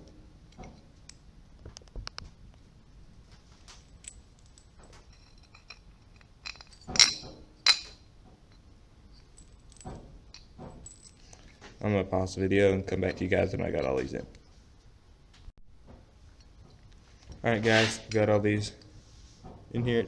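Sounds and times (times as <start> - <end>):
metal bolts clinking: 3.6 - 12.0, 12.6 - 14.5, 16.4 - 18.9.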